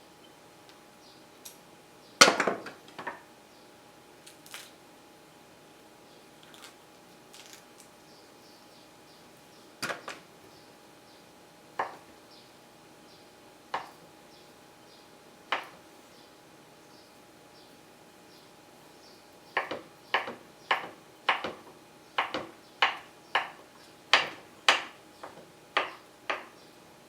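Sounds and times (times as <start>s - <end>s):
household objects knocking: 19.6s - 26.6s.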